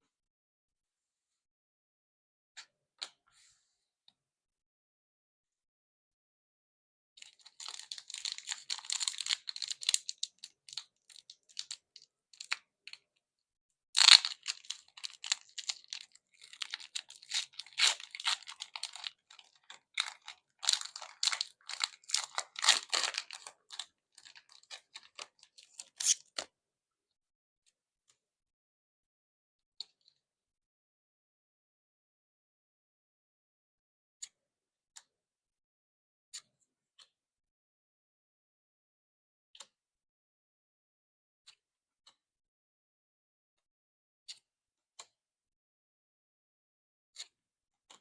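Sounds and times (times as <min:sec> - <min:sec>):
foil wrapper crinkling and tearing: 0:07.2 - 0:11.8, 0:12.4 - 0:12.6, 0:14.0 - 0:26.4.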